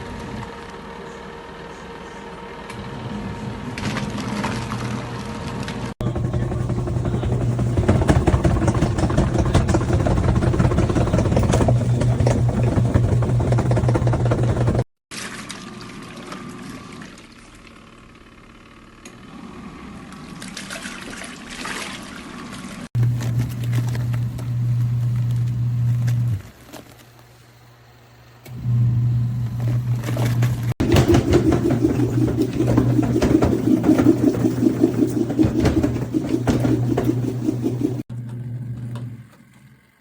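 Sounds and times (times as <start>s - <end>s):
washing machine motor hum: 0.0s - 14.9s, 22.3s - 26.6s, 27.8s - 40.0s
water churning in tub: 20.3s - 22.9s, 30.1s - 38.1s.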